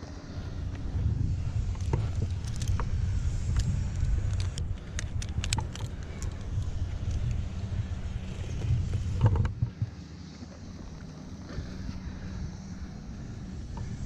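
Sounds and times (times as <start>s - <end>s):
engine rumbling: 0.0s - 14.0s
light clicks and rattles: 1.6s - 7.6s.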